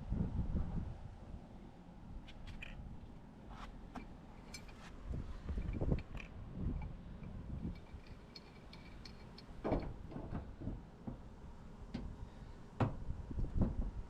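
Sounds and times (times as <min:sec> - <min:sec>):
light ticks of tools: 0:05.6 - 0:10.4
sharp knocks of pipe fittings: 0:05.6 - 0:11.2.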